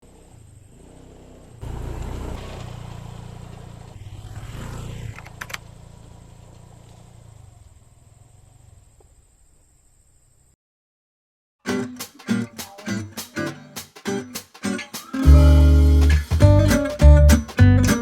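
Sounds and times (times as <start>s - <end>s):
engine running: 0.0s - 9.1s
sharp clicks: 5.1s - 5.6s.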